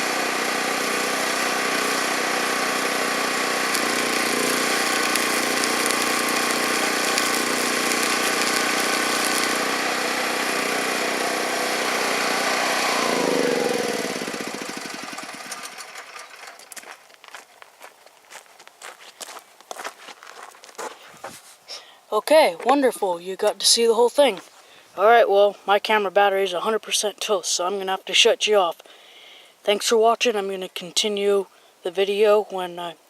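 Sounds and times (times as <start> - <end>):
engine winding down: 0.0 - 17.0
generator engine running: 0.0 - 17.1.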